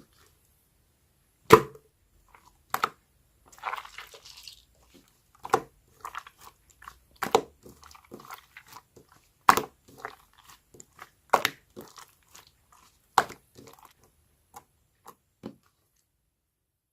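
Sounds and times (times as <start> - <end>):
sticky wet slime pops: 1.5 - 1.8, 2.7 - 3.0, 3.6 - 6.4, 7.1 - 8.8, 9.4 - 12.5, 13.1 - 13.9
slime squeezed by hand: 3.5 - 13.9.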